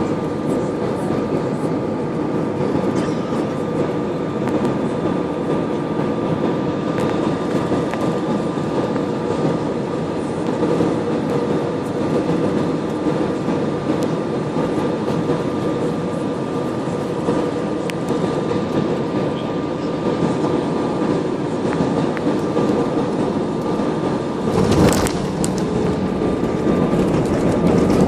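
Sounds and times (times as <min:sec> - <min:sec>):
airliner engine rumble: 0:00.0 - 0:28.0
steady whine: 0:21.6 - 0:28.0.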